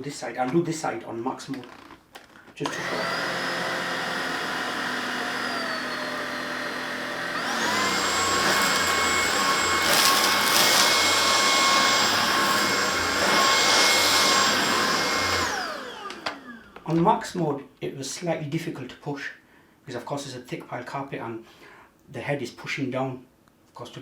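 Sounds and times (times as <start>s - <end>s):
stick vacuum motor whine: 2.6s - 17.0s.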